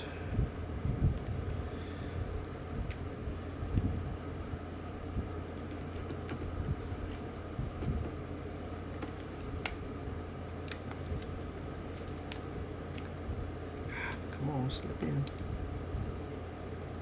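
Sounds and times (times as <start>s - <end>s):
steady low hum: 0.0s - 17.0s.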